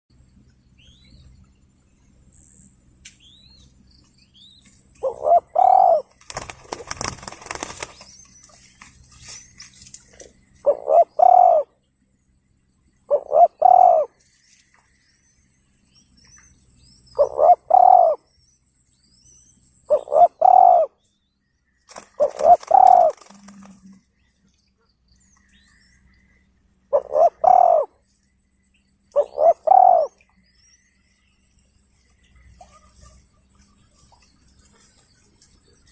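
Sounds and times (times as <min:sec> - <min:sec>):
high steady whine: 0:00.1 - 0:24.4
small birds chirping: 0:00.1 - 0:35.9
dove cooing: 0:05.0 - 0:08.0, 0:10.1 - 0:11.8, 0:13.1 - 0:14.2, 0:17.2 - 0:18.2, 0:19.9 - 0:20.9, 0:22.1 - 0:24.0, 0:26.9 - 0:28.0, 0:29.1 - 0:30.2.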